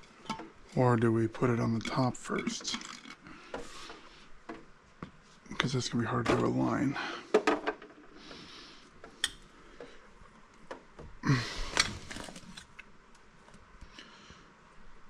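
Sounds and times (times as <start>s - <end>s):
parts clicking and knocking: 7.3s - 8.4s.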